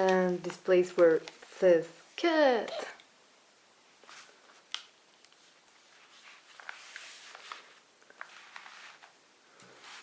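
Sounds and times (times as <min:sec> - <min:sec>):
paper rustling: 0:05.4 - 0:10.0.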